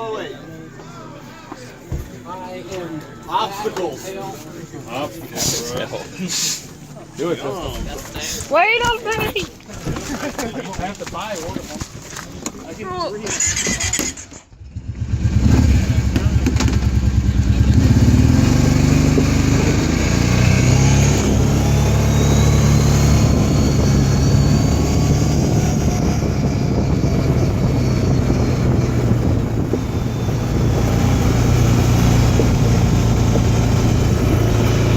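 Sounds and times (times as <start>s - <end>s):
vehicle engine running: 14.6s - 34.9s.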